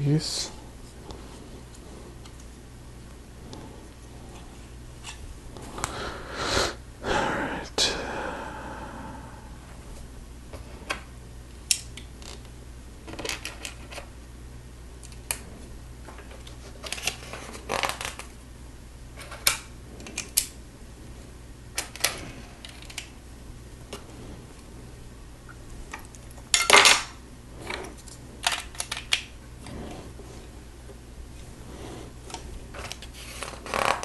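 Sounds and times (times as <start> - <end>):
plastic bricks clicking and clattering: 28.4 - 29.2.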